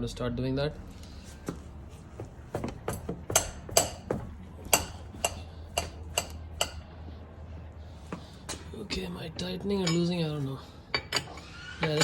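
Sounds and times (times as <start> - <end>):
metal wrench clinking on wheel nuts: 4.7 - 6.8, 8.5 - 12.0.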